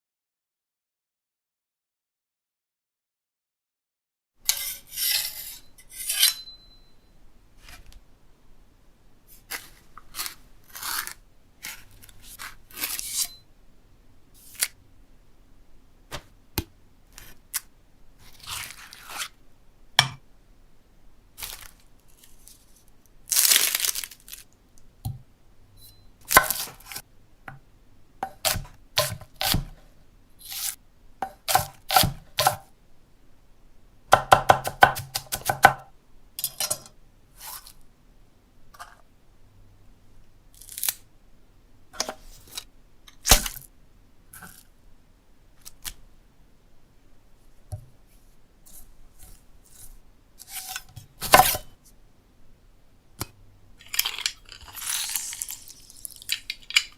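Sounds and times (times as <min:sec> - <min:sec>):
food scraping and crinkling: 0:09.3 - 0:13.4, 0:17.1 - 0:19.4, 0:21.4 - 0:24.6, 0:26.2 - 0:27.1, 0:40.5 - 0:41.0, 0:48.7 - 0:51.8, 0:53.8 - 0:56.9
long rustling scrape: 0:09.3 - 0:13.4.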